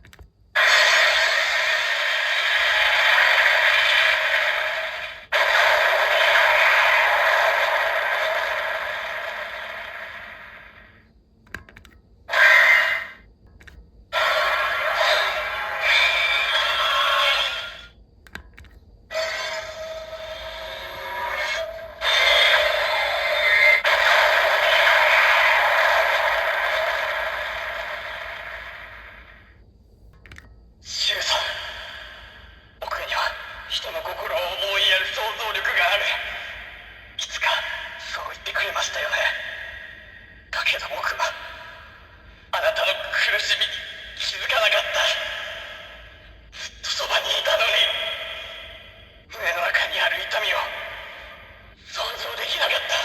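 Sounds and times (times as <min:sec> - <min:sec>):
harsh scratchy toy sound effect: 0:00.6 - 0:10.9, 0:12.3 - 0:13.2, 0:14.2 - 0:17.9, 0:19.1 - 0:29.4, 0:30.9 - 0:31.9.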